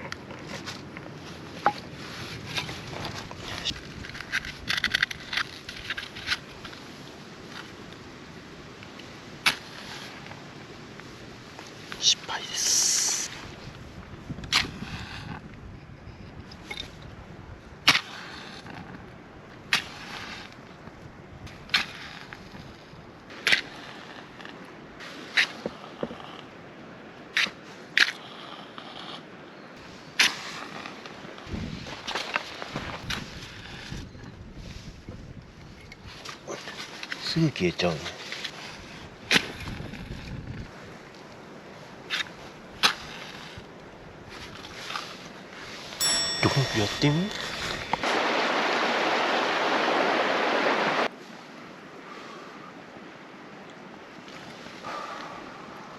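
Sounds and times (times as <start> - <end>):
steady low hiss: 34.7 - 54.8.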